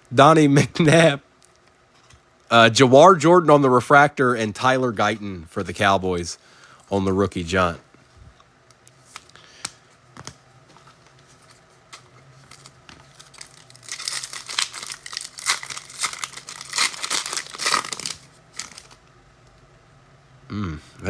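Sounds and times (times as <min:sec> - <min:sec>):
wrapper crinkling and tearing: 0:11.9 - 0:19.1.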